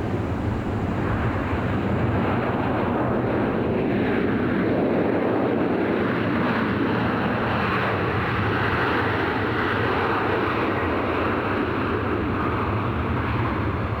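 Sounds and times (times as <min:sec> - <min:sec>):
jet engines rushing: 0:00.0 - 0:14.0.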